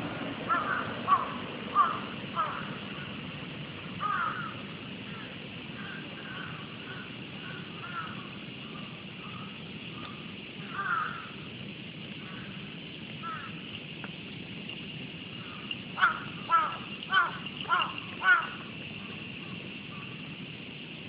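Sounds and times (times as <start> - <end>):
crow cawing: 0.5 - 3.1, 4.0 - 11.4, 12.2 - 12.6, 13.2 - 13.6, 15.4 - 18.7
high-pitched background drone: 12.2 - 21.0.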